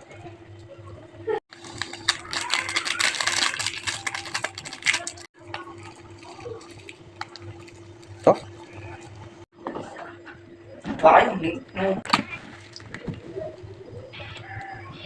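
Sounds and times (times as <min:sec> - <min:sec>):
crackling and clicking: 0:01.5 - 0:08.9
steady low hum: 0:03.8 - 0:15.0.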